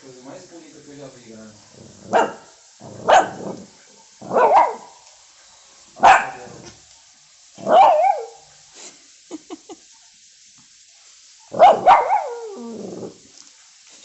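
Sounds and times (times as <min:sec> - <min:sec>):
dog barking: 0:02.0 - 0:05.0, 0:06.0 - 0:06.7, 0:07.6 - 0:08.5, 0:11.5 - 0:12.6.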